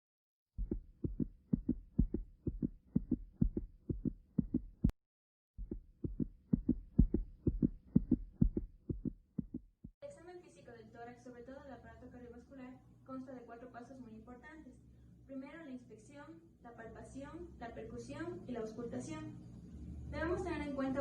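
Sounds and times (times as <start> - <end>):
heartbeat thumps: 0.6 - 4.9, 5.6 - 10.0.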